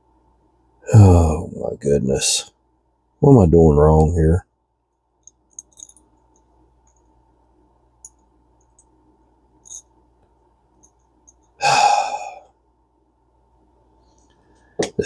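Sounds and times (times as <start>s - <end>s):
person sighing: 0.9s - 1.4s, 11.6s - 12.5s.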